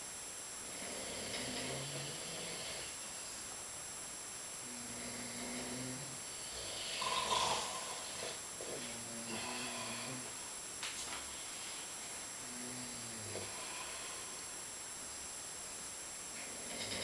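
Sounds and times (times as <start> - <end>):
men snoring: 0.7 - 3.0, 4.6 - 10.4, 12.4 - 14.4, 16.4 - 17.0.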